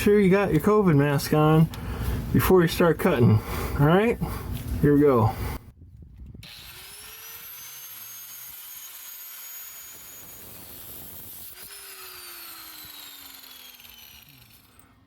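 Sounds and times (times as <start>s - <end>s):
power cutoff tool whining: 6.4s - 15.0s.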